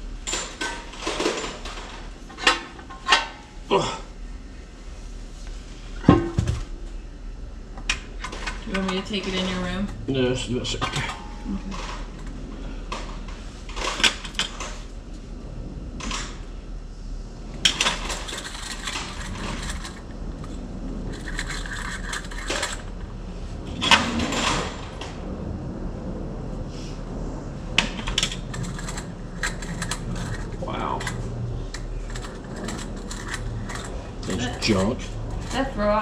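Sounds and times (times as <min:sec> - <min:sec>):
metal tools clinking: 0:17.7 - 0:23.0, 0:28.0 - 0:35.7.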